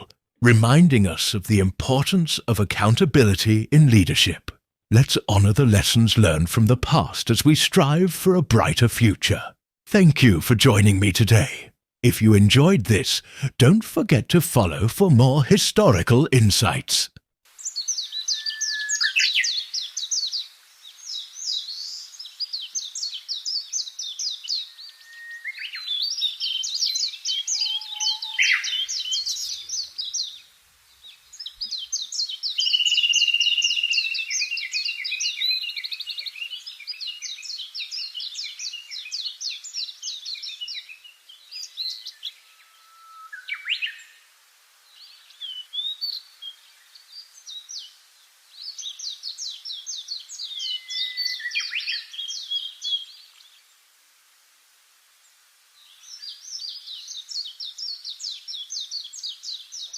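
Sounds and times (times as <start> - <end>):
songbird trilling: 17.6 - 20.5, 21.1 - 30.4, 31.4 - 40.9, 41.6 - 44.1, 48.6 - 53.1.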